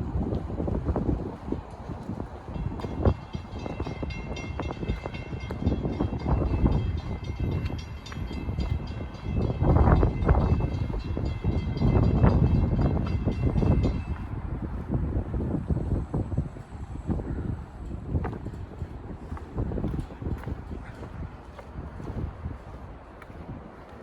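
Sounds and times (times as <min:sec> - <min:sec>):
train rumbling past: 0:00.0 - 0:22.4
train wheel clacks: 0:01.1 - 0:14.4.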